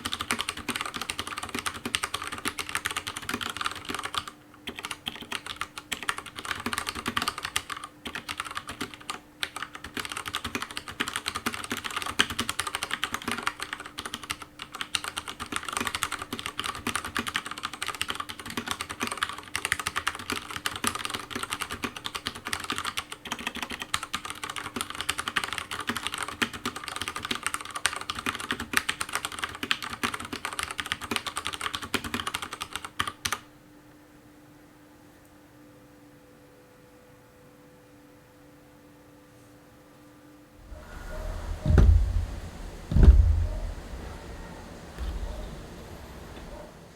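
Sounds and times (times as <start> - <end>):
mechanical keyboard typing: 0.0 - 33.4.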